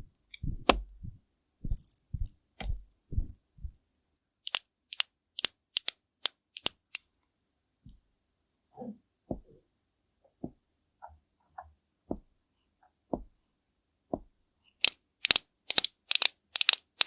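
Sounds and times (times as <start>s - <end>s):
sharp bright clicks: 4.4s - 7.1s, 14.8s - 17.0s
soft dull taps: 10.4s - 12.3s, 13.1s - 13.3s.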